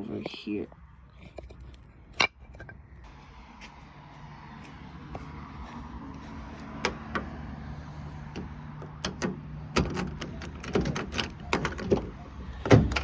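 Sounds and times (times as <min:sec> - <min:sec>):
car door clicks and knocks: 0:06.7 - 0:07.4, 0:08.3 - 0:13.0
car door thump: 0:09.1 - 0:13.0.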